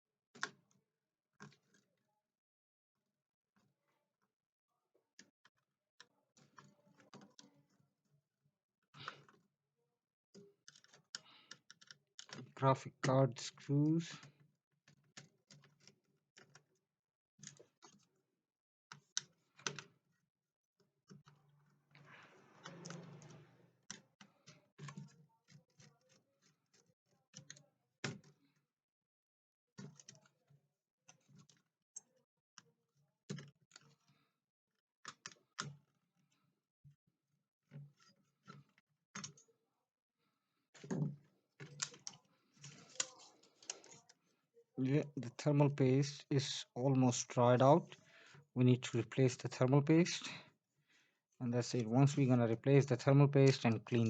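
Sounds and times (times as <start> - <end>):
laptop parts clicking and knocking: 0.3 - 0.8, 1.4 - 1.9, 5.0 - 8.0, 10.4 - 12.6, 14.2 - 16.8, 18.9 - 20.2, 22.6 - 28.7, 29.8 - 36.4, 37.6 - 39.6, 40.8 - 44.2.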